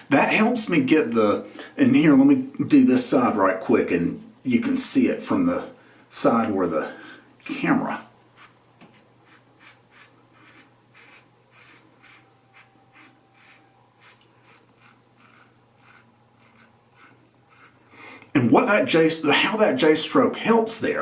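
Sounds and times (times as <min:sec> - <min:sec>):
razor scraping whiskers: 0:08.4 - 0:17.8.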